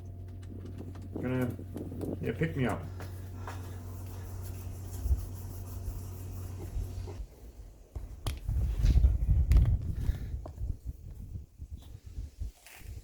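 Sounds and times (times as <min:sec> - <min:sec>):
handling rubbing and knocking: 0:00.0 - 0:07.2
low hum: 0:00.0 - 0:11.5.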